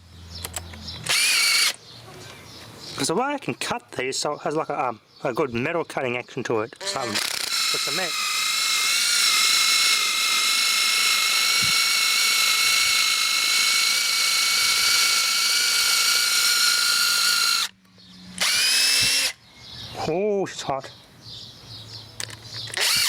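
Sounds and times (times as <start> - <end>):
cordless drill whining: 1.0 - 1.8, 6.8 - 17.7, 18.4 - 19.4, 22.6 - 23.0.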